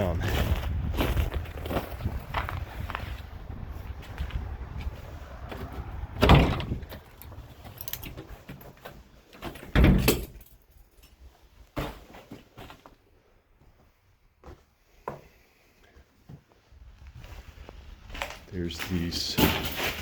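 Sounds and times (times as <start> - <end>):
low rumble: 0.0 - 7.8
door opening and shutting: 5.6 - 8.7, 9.4 - 10.5.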